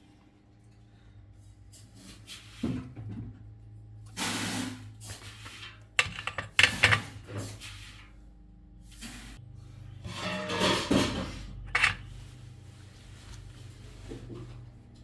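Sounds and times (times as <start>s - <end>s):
low mains hum: 0.0s - 15.0s
tools handled on workbench: 5.4s - 7.2s, 10.2s - 12.2s.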